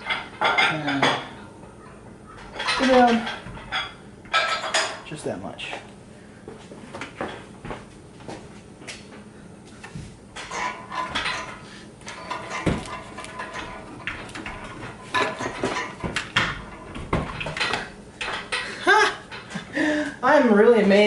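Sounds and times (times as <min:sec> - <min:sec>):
metallic clinks and clanks: 0:10.4 - 0:19.5.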